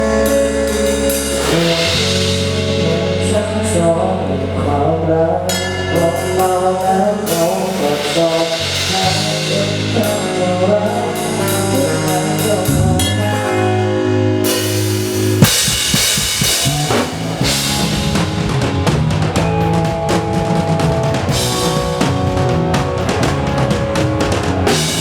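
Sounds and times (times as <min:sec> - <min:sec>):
drum kit: 0:00.0 - 0:04.1, 0:05.5 - 0:13.8, 0:14.4 - 0:25.0
bass: 0:00.0 - 0:25.0
keyboard or guitar lines: 0:00.0 - 0:25.0.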